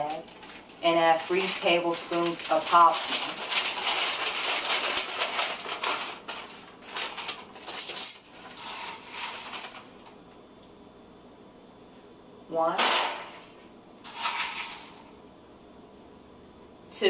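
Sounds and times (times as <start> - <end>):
popcorn kernels rattling on spoon: 0.0 - 9.8, 14.1 - 15.0
paper bag crinkling: 0.0 - 10.1.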